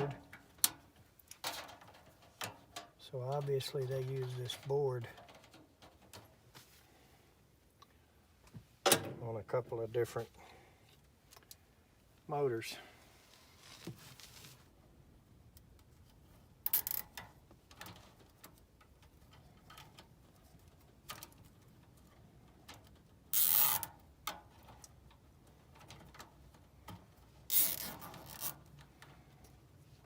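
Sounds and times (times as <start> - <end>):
scraping rustle: 13.0 - 14.7.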